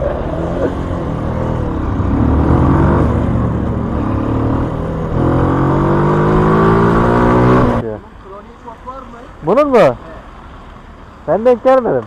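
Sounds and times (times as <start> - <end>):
motorcycle engine revving: 0.0 - 7.8.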